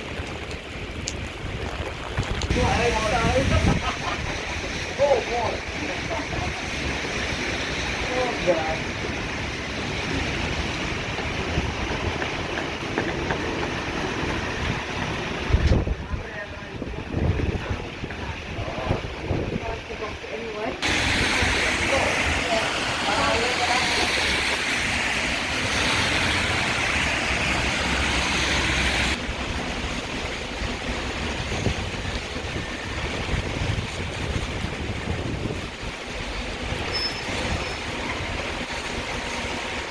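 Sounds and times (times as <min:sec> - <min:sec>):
raindrop ticks: 0:00.0 - 0:03.2, 0:10.0 - 0:15.9
heavy rain hiss: 0:00.0 - 0:39.9
low rumble of traffic: 0:00.0 - 0:39.9.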